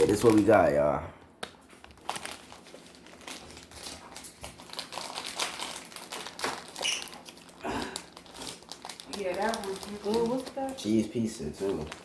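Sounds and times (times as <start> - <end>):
plastic snack bag crinkling: 0.0 - 0.9, 1.8 - 12.0.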